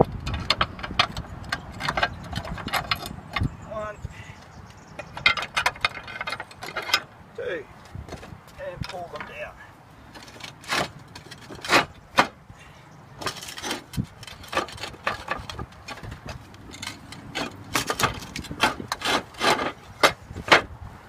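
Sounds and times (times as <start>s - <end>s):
roof tiles knocking and clacking: 0.0s - 3.6s, 4.7s - 7.1s, 10.1s - 12.4s, 13.2s - 20.7s.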